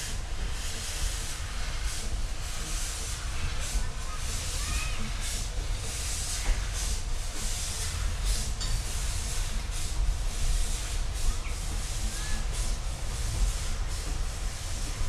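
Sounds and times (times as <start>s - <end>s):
steam locomotive rumble: 0.0s - 15.0s.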